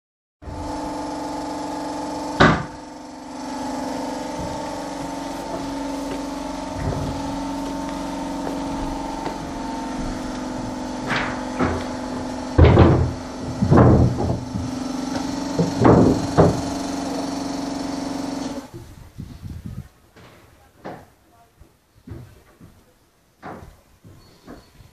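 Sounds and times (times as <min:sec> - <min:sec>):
steady machine hum: 0:00.4 - 0:19.4
hammering on timber: 0:02.4 - 0:02.8, 0:04.3 - 0:17.3, 0:23.4 - 0:23.8.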